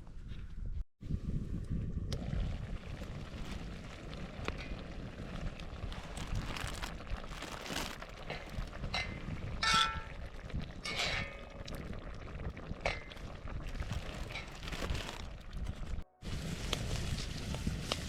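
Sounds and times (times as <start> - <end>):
low rumble of wind: 0.0 - 18.0
metal cookware clinking: 9.0 - 10.1, 10.8 - 11.6.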